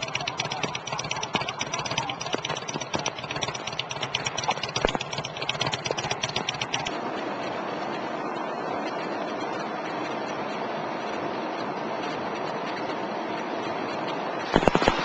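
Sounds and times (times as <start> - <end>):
engine knocks: 0.0 - 7.0
engine idling with ticking clatter: 0.0 - 15.0.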